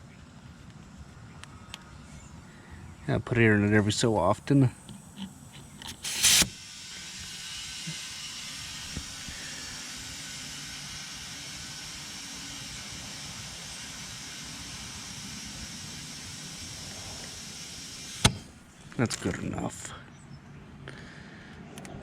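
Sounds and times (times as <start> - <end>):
compressed air hissing into tire: 3.9 - 18.8
air chuck burst: 4.5 - 18.8.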